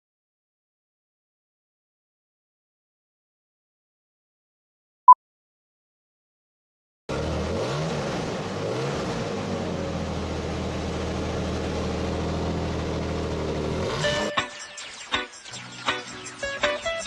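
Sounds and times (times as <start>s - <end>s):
motor engine running: 7.1s - 14.3s.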